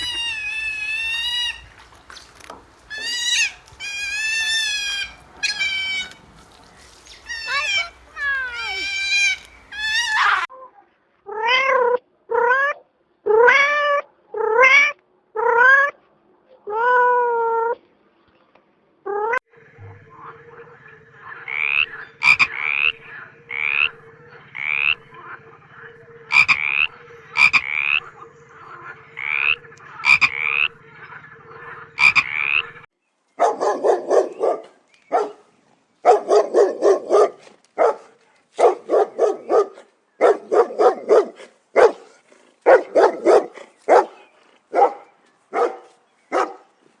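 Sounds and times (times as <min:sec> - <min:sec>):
drawn-out downward-bending animal calls: 0:00.0 - 0:10.5, 0:19.5 - 0:32.9
fast pulsed animal calls: 0:00.0 - 0:10.5, 0:19.5 - 0:32.9
short rising animal calls: 0:00.0 - 0:10.5, 0:19.6 - 0:32.9
steady hum: 0:19.5 - 0:32.9.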